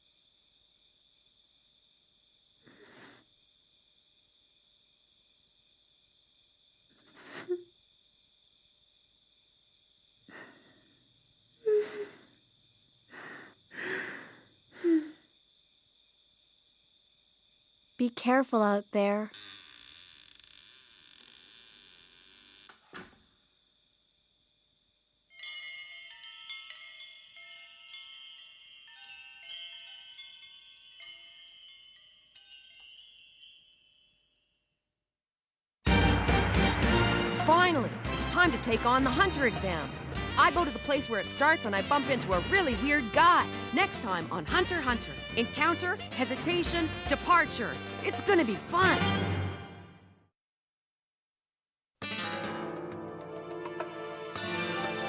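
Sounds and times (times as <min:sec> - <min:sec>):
crickets chirping: 0:00.0 - 0:34.6, 0:36.8 - 0:48.9
person breathing out heavily: 0:13.1 - 0:15.2
wind chimes tinkling: 0:25.3 - 0:34.6.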